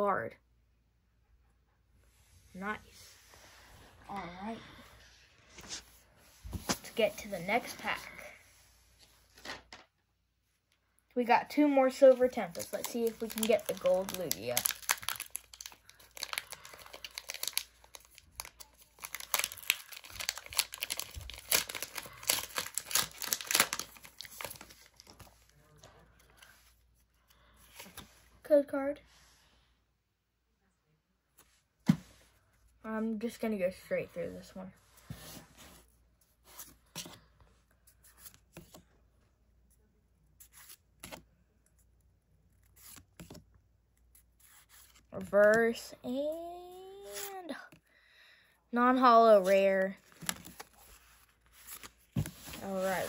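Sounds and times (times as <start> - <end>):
foil wrapper crinkling and tearing: 12.4 - 25.2.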